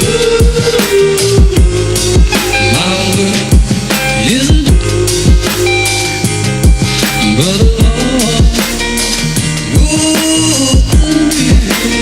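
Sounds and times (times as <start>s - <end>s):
bass drum hits: 0.0s - 12.0s
gliding synth melody: 1.8s - 7.6s.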